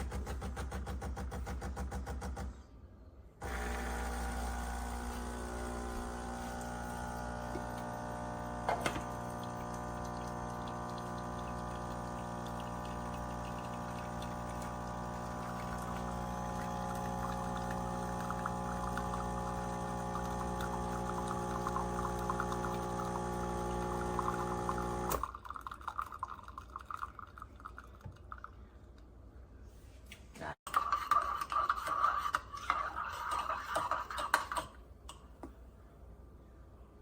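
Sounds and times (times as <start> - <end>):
espresso machine pump humming: 3.4 - 25.3
liquid trickling: 9.0 - 28.6.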